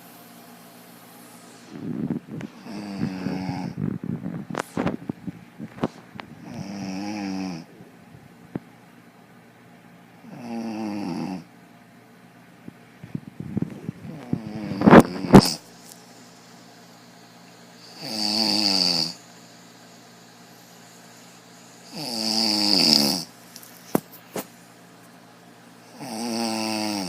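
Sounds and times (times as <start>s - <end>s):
woman snoring: 2.6s - 3.8s, 6.4s - 7.7s, 10.2s - 11.5s, 14.1s - 15.6s, 17.8s - 19.2s, 21.8s - 23.3s, 25.9s - 27.0s.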